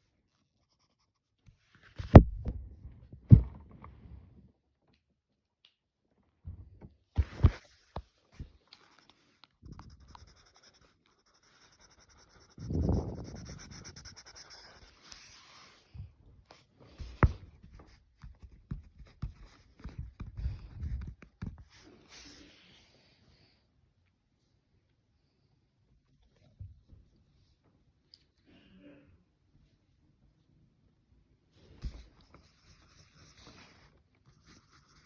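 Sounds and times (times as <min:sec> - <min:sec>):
drawing tool scratching paper: 0:09.8 - 0:15.4.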